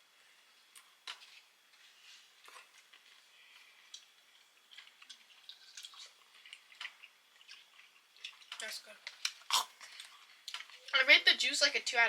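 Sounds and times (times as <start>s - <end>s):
chewing pickle: 2.4s - 11.0s.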